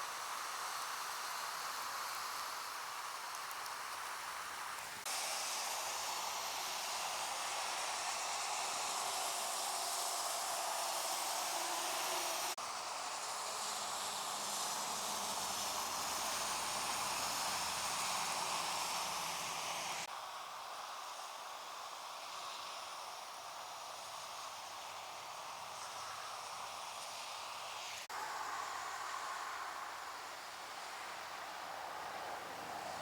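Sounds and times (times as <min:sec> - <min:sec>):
rain and floodwater washing: 0:05.1 - 0:20.1.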